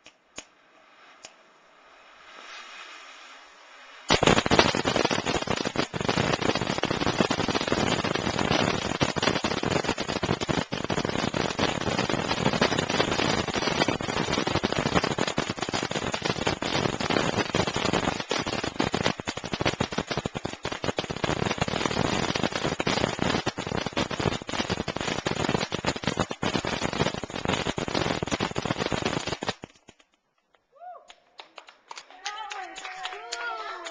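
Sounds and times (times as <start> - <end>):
firework rapid cracks and bangs: 2.2 - 30.7.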